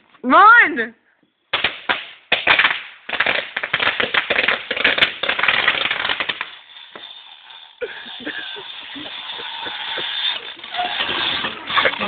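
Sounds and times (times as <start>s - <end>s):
firework pops: 1.5s - 7.1s
firework crackling: 1.5s - 12.0s.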